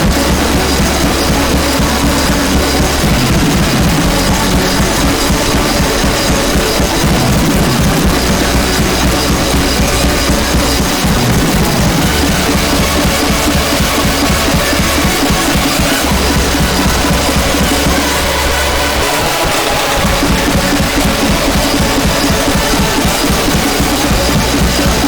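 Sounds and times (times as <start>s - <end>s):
fast heavy drumming: 0.0s - 25.0s
heavy distorted music: 0.0s - 25.0s.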